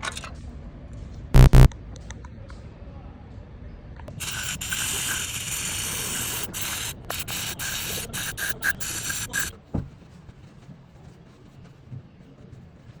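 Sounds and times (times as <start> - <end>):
hissing spray bursts: 4.1 - 9.6.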